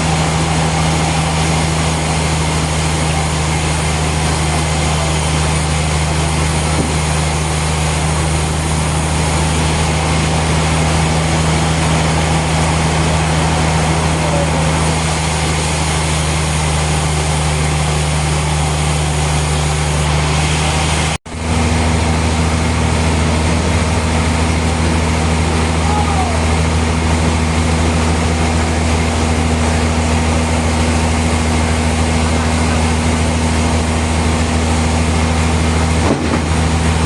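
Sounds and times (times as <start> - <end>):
heavy machinery humming: 0.0 - 37.0
wide noisy rush: 0.0 - 37.0.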